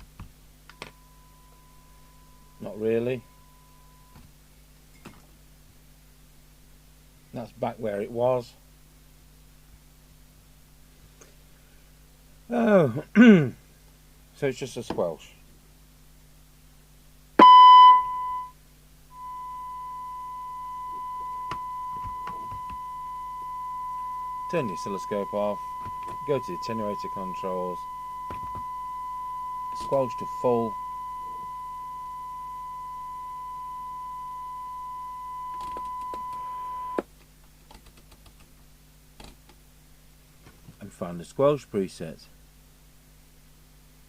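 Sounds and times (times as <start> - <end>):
radio test tone: 19.1 - 37.0.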